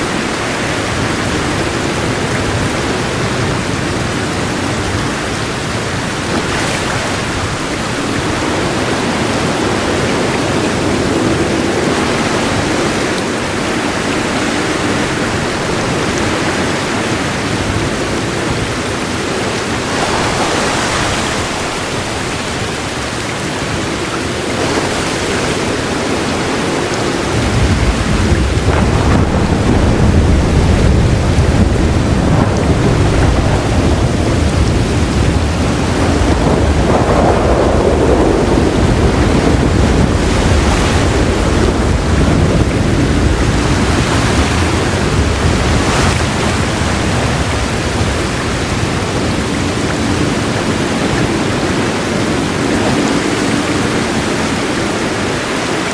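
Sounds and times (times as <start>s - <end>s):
heavy rain falling: 0.0s - 55.9s
low thunder roll: 27.1s - 50.5s.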